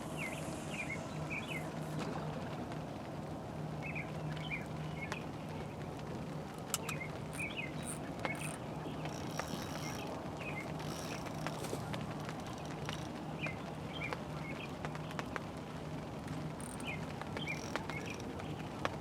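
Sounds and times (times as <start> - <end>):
background hiss: 0.0 - 4.0
light clicks: 6.7 - 10.1.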